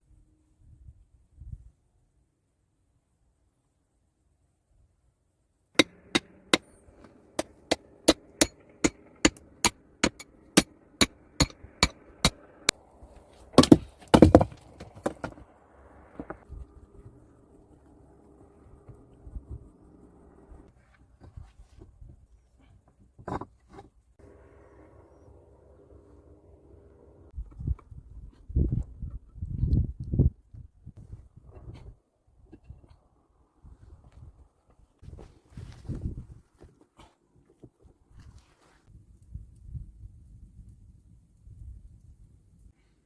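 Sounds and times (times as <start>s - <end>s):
tool chopping blows: 7.4s - 12.4s.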